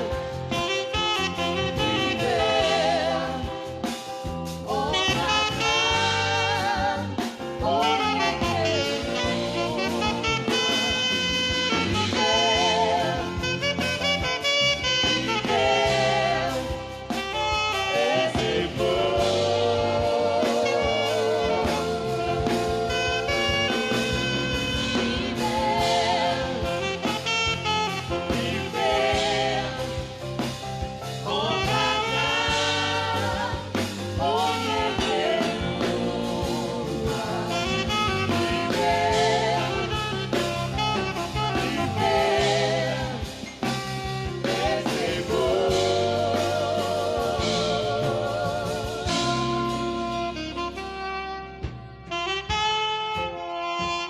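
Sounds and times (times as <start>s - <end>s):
saxophone slow melody: 0.0s - 2.8s, 4.8s - 30.2s, 37.5s - 42.5s, 43.2s - 44.7s, 47.4s - 54.0s
sustained backing track: 0.0s - 54.0s.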